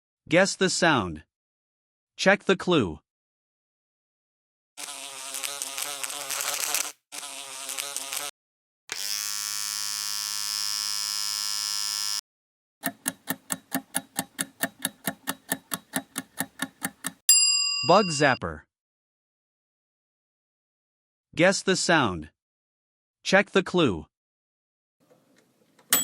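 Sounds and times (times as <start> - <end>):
fly-like buzzing: 4.8 - 8.3.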